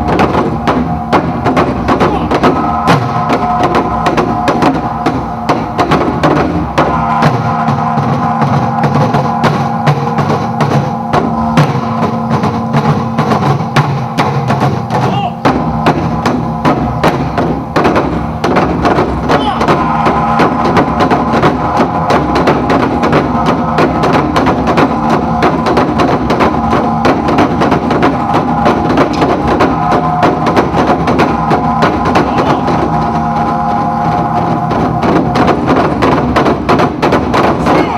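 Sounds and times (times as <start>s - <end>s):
sustained held tones: 0.0s - 36.4s
drum and percussion strikes: 0.0s - 37.9s.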